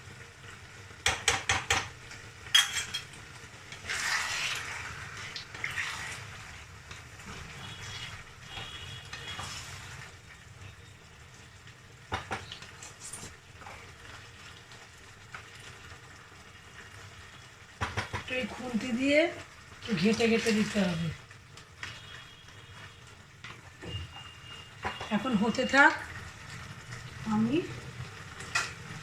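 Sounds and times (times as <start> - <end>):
utensil knocking on pan: 1.0 - 1.9, 17.8 - 18.3
greens hissing and sizzling: 3.0 - 29.0.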